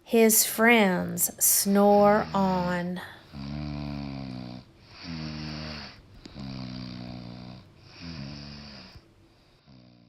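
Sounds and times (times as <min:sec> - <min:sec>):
long snores: 0:02.0 - 0:10.0.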